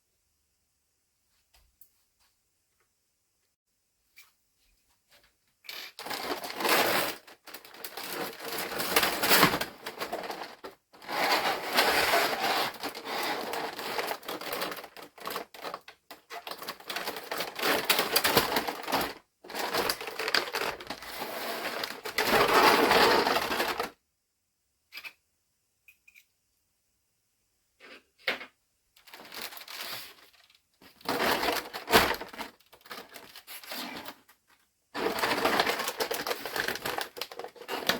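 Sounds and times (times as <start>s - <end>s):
packaging rustling and crinkling: 5.9s - 24.0s, 29.0s - 37.9s.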